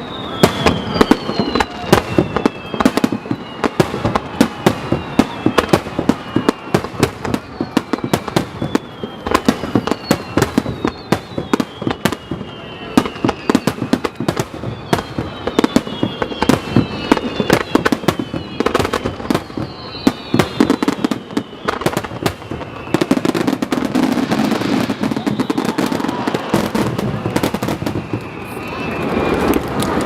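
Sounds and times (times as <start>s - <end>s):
fireworks bangs: 0.0s - 30.0s
fireworks crackling: 0.0s - 30.0s
fireworks whistles: 0.0s - 30.0s.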